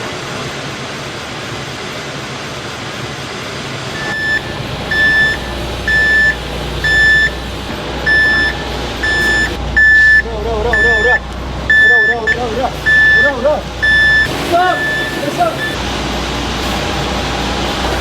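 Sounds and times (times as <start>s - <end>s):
machinery hum: 3.5s - 18.0s
reversing alarm beeping: 4.0s - 15.8s.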